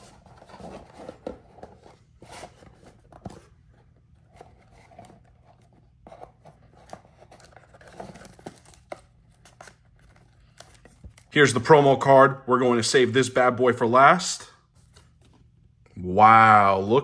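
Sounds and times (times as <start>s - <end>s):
cardboard packaging rustling: 0.0s - 11.8s.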